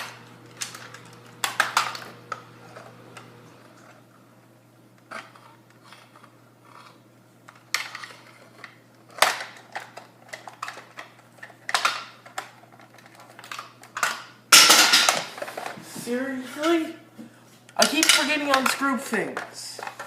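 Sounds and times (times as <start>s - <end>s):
plastic toy gun clicks and clatters: 7.5s - 15.4s, 17.8s - 20.0s.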